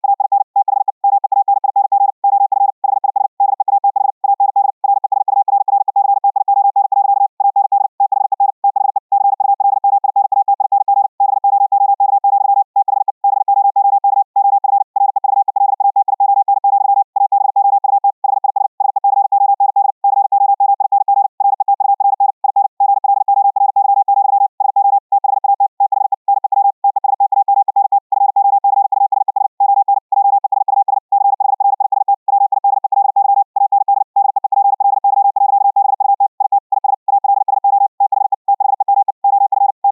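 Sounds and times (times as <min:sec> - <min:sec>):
morse code tone: 0:00.0 - 0:12.6, 0:31.3 - 0:39.9.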